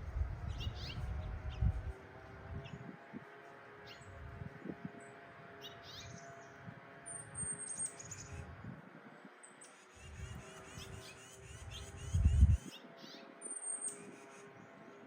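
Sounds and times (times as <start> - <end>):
small birds chirping: 0.4 - 1.8, 4.9 - 8.5, 9.4 - 15.0.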